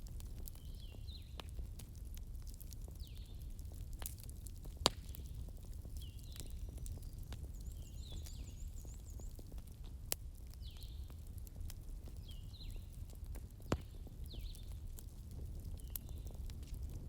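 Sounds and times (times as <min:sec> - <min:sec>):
fire crackles and pops: 0:00.0 - 0:17.0
wood fire roaring: 0:00.0 - 0:17.0
bird chirping: 0:07.6 - 0:09.4.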